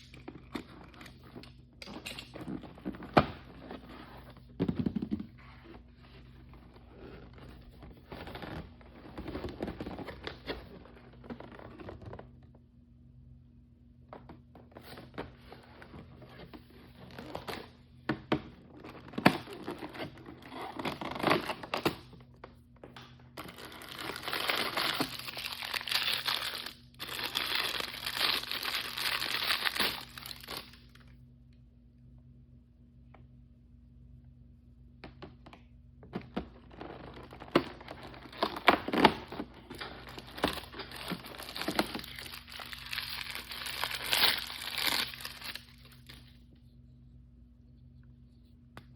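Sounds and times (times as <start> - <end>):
plastic packaging crinkling: 23.4 - 31.0, 36.8 - 46.3.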